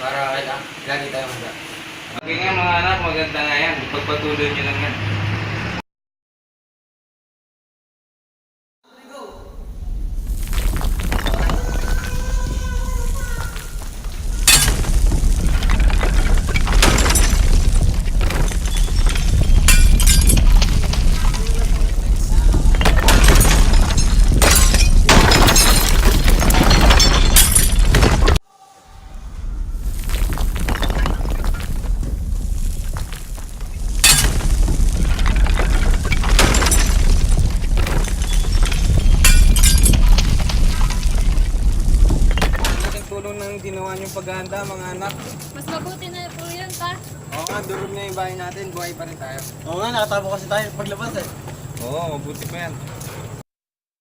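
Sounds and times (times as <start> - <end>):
deep continuous rumble: 9.4 - 43.8
things crashing down: 9.6 - 43.9
glass shattering: 13.6 - 28.4, 29.7 - 43.3.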